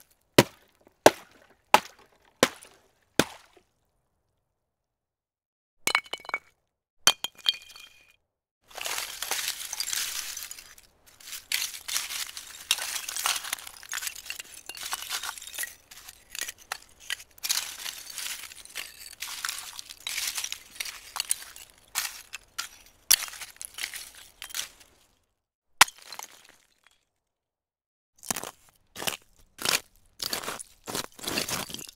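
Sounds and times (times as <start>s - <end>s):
ice crunching and crackling: 8.7s - 25.2s, 28.2s - 31.9s.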